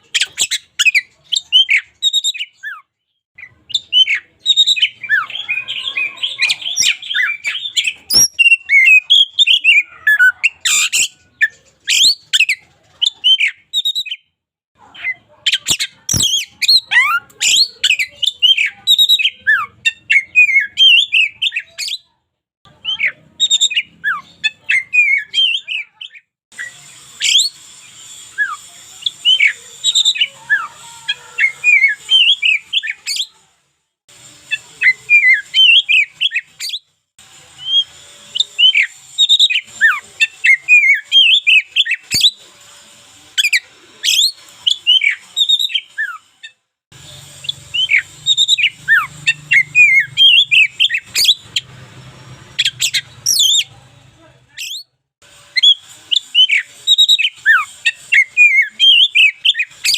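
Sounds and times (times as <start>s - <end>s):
bird singing whistled song: 0.1s - 14.2s, 15.5s - 22.1s, 22.8s - 27.6s, 31.4s - 33.3s, 34.5s - 36.8s, 37.6s - 42.4s, 43.4s - 46.3s, 47.4s - 51.6s, 52.6s - 53.7s, 55.6s - 59.9s.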